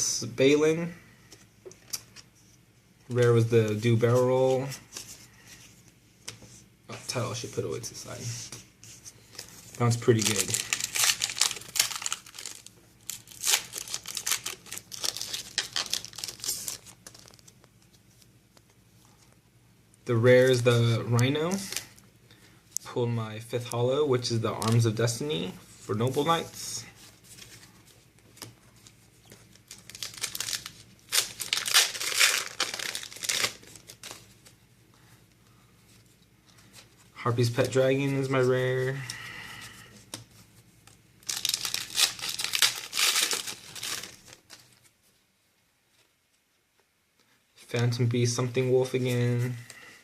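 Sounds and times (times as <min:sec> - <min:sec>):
foil wrapper crinkling: 0:09.8 - 0:17.6, 0:29.2 - 0:34.5, 0:41.2 - 0:44.9.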